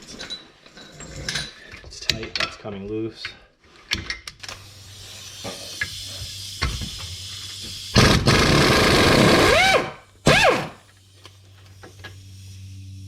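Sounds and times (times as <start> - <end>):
air ratchet whining: 4.5 - 10.9.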